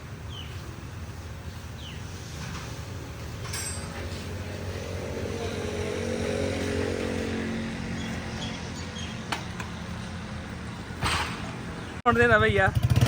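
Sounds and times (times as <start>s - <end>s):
motorcycle engine running: 2.9s - 11.2s, 11.8s - 13.0s.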